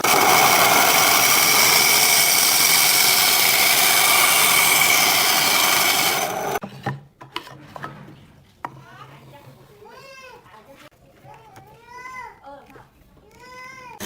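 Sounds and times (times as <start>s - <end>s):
power tool whining against wood: 0.0s - 6.6s.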